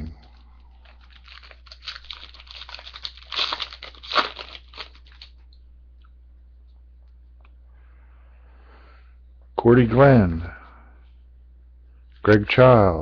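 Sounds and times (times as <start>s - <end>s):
wrapper crinkling and tearing: 0.2s - 5.5s.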